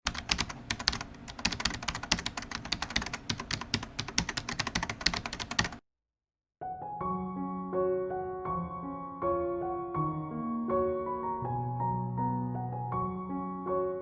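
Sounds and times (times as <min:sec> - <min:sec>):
keyboard typing clicks: 0:00.1 - 0:05.8
soft piano music: 0:06.6 - 0:14.0.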